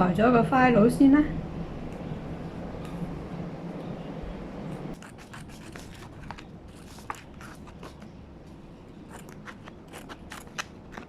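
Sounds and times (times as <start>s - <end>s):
scissors snipping plastic: 9.1s - 11.0s.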